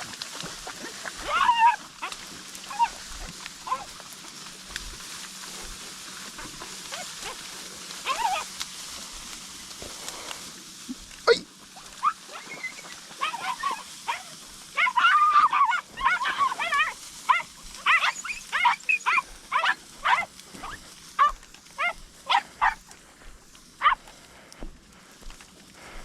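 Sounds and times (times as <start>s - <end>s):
hounds yelping: 0.6s - 4.1s, 6.3s - 9.1s, 11.8s - 24.1s.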